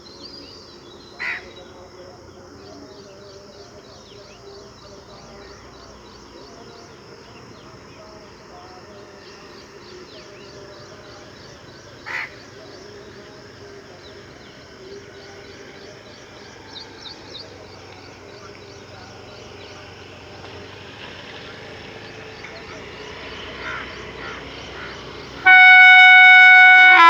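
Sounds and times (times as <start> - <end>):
small birds chirping: 0.0 - 25.4
crow caw: 1.2 - 1.6, 12.0 - 12.4, 23.6 - 25.1.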